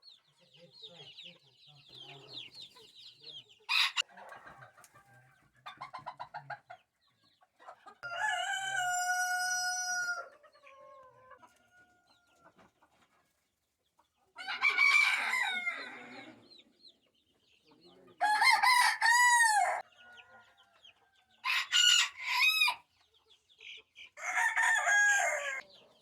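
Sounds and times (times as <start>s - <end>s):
chickens clucking and squawking: 0.0s - 26.0s
rooster crowing: 8.0s - 10.3s, 14.4s - 16.2s, 18.2s - 20.5s, 21.4s - 22.8s, 24.2s - 25.6s.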